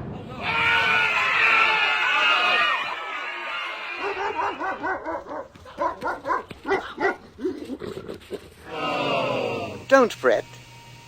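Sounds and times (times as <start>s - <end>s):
dog barking and yipping: 3.8s - 7.6s.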